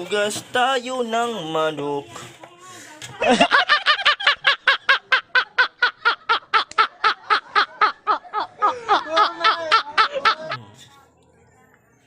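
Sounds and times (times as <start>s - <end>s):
person laughing hard: 3.2s - 10.7s.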